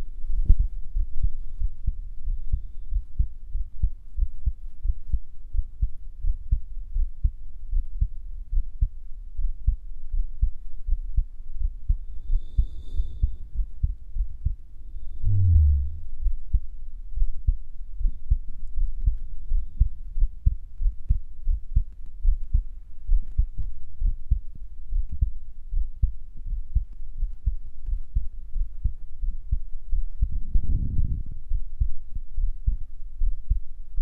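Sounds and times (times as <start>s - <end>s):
heartbeat thumps: 0.0s - 19.2s, 19.8s - 34.0s
low sound falling in pitch: 15.2s - 16.3s.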